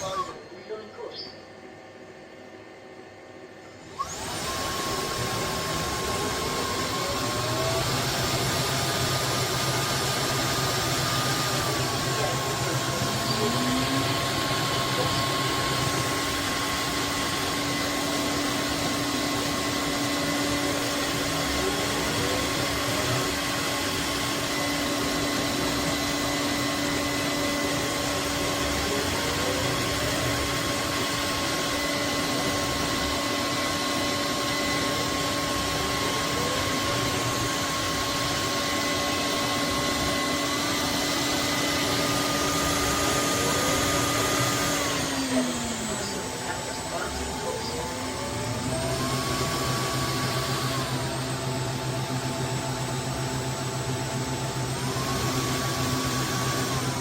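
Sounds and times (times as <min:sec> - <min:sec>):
vacuum mop motor and fan: 0:00.0 - 0:57.0.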